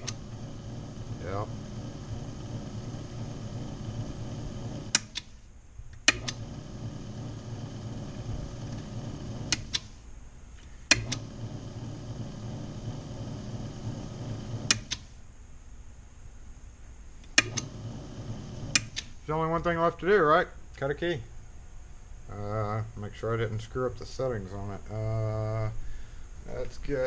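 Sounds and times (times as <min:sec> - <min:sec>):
electric motor humming: 0:00.0 - 0:05.2, 0:06.0 - 0:09.8, 0:11.0 - 0:14.9, 0:17.3 - 0:19.0.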